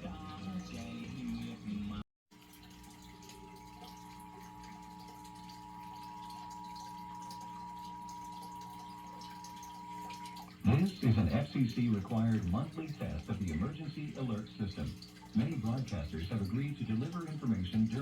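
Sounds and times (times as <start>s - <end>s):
two-tone alarm: 3.2s - 10.5s.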